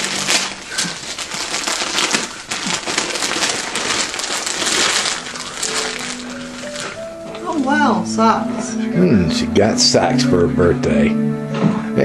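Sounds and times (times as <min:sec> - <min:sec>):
wrapping paper rustling: 0:00.0 - 0:08.0.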